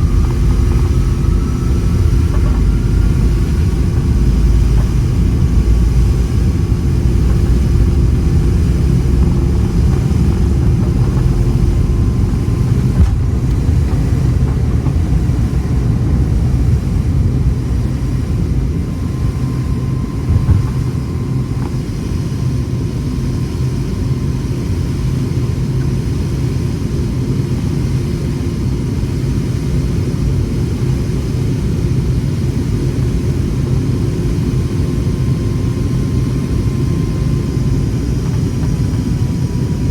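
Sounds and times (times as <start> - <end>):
steady hum: 0.0 - 25.2
jet engines and airflow rumble: 0.0 - 39.9.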